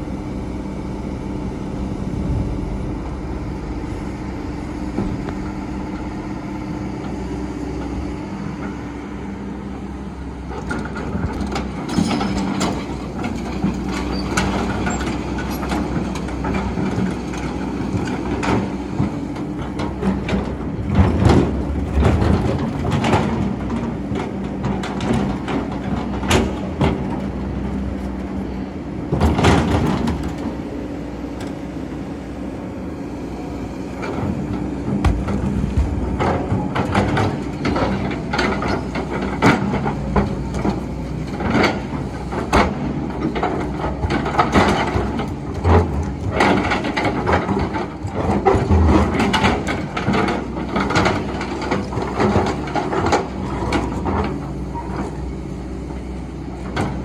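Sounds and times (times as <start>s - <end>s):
excavator diesel engine running: 0.0s - 57.0s
bucket knocks clanks and scrapes: 34.9s - 38.9s.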